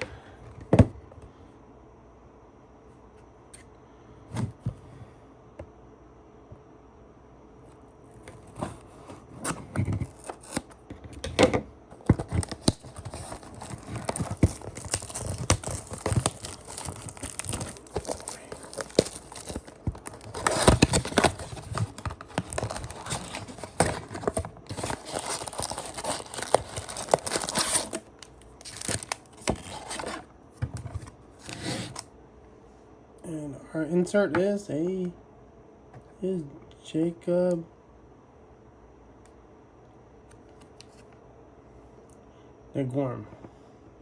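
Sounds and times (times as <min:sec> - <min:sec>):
packaging being torn open: 0:09.4 - 0:10.8, 0:12.1 - 0:30.3.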